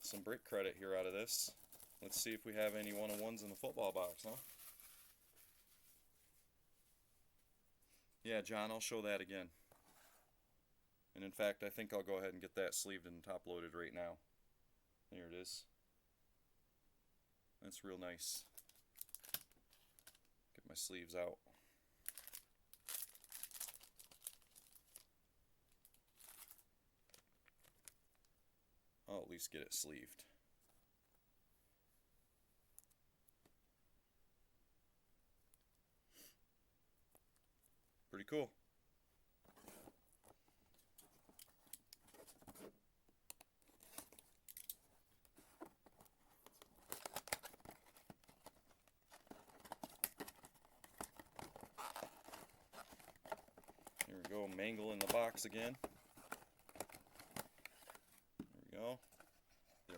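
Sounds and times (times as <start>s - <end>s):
plastic card sleeves rustling: 0.0s - 6.0s, 18.4s - 20.2s, 22.1s - 25.1s, 25.8s - 28.0s, 43.3s - 58.4s.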